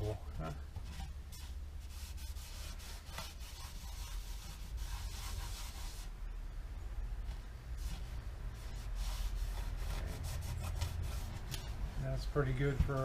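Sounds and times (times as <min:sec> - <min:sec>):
hand rubbing on wood: 0:00.8 - 0:06.1, 0:07.8 - 0:11.8.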